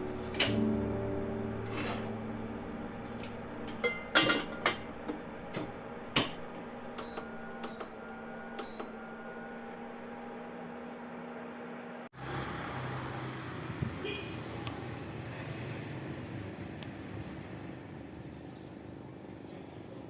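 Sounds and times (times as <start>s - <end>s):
kitchen appliance humming: 0.0s - 14.2s.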